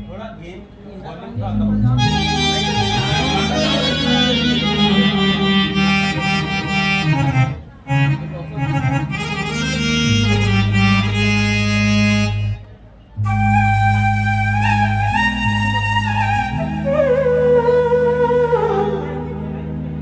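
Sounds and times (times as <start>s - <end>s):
reed-like chords: 1.2s - 20.0s
steady bass note: 1.4s - 12.6s.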